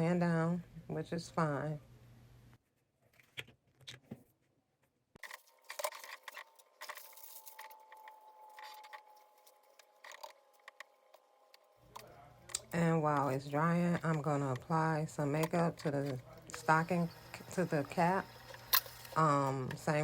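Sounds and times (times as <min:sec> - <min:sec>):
faint steady tone: 0:06.3 - 0:14.3, 0:16.5 - 0:20.0.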